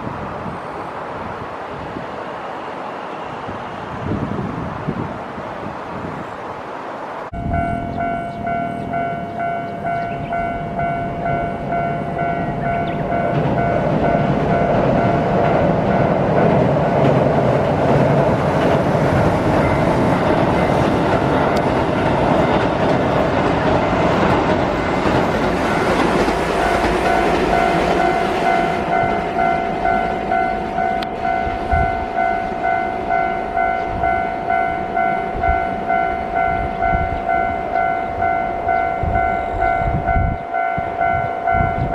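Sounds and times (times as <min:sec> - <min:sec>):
train rumbling over steel bridge: 0:00.0 - 0:41.9
pulsing ringing tone: 0:07.4 - 0:15.3, 0:26.6 - 0:41.9.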